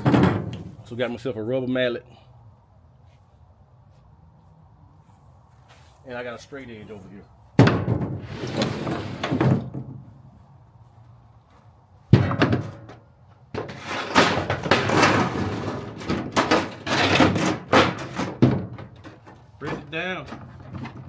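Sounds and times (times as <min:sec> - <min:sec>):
sheet metal clatter: 0:13.6 - 0:21.0.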